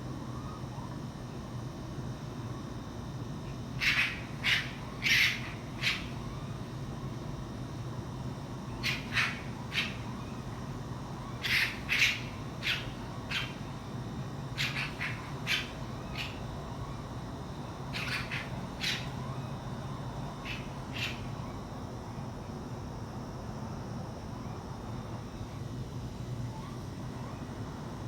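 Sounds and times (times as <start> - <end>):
steady low hum: 0.0 - 28.0
animal harsh calls: 17.9 - 19.1.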